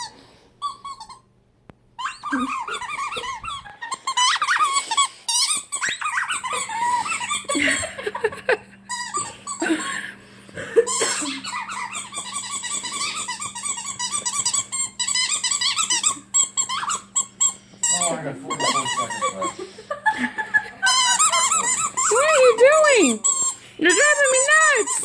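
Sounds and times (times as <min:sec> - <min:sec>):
dog chewing squeaky toy: 0:00.0 - 0:01.3, 0:02.0 - 0:07.6, 0:08.9 - 0:09.6, 0:10.9 - 0:19.6, 0:20.9 - 0:25.0.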